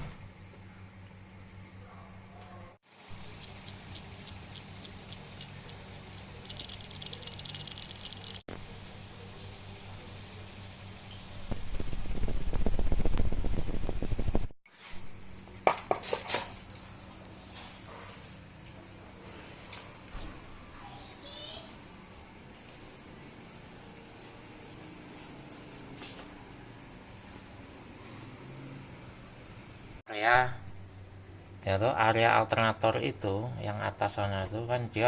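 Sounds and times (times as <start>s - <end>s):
rapid ratchet clicking: 3.2s - 8.5s
metal hand tools clicking: 3.4s - 8.4s.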